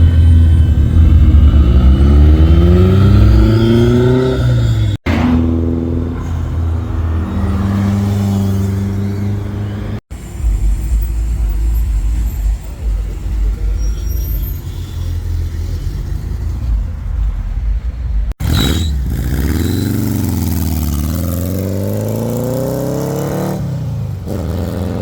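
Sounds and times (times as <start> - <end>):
car engine revving: 0.0 - 25.0
low engine rumble: 4.6 - 19.2.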